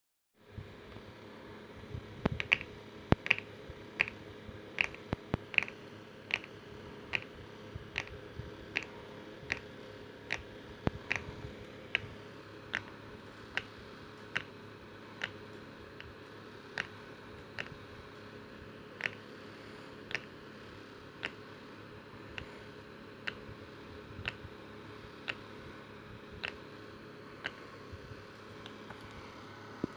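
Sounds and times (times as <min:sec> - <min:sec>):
knuckles cracking: 0:02.2 - 0:04.2, 0:04.8 - 0:07.4, 0:08.0 - 0:09.7, 0:10.3 - 0:14.6, 0:19.0 - 0:19.3, 0:20.1 - 0:20.4, 0:26.4 - 0:26.6.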